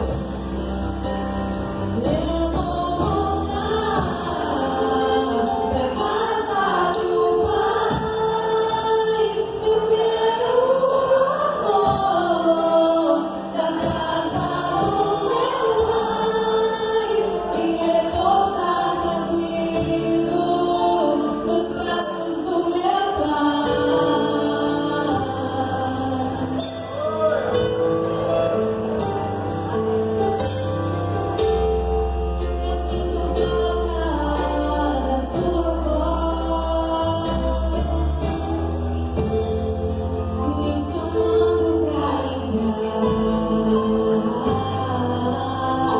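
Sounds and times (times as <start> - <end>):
low bass line: 0.0 - 9.0, 23.4 - 45.9
group of voices singing: 2.0 - 28.4, 32.6 - 39.7.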